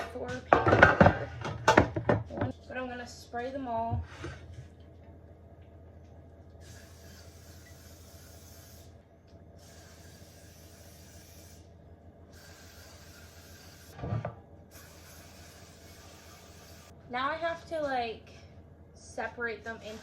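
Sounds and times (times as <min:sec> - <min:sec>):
aerosol spray hissing: 0:12.4 - 0:14.0, 0:14.7 - 0:16.9.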